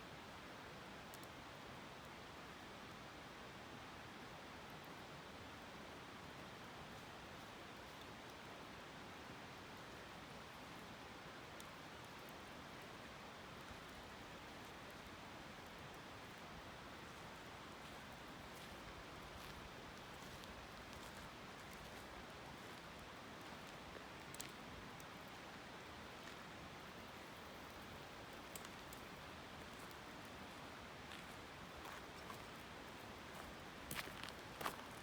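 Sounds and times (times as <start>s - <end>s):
river flowing: 9.0s - 35.0s.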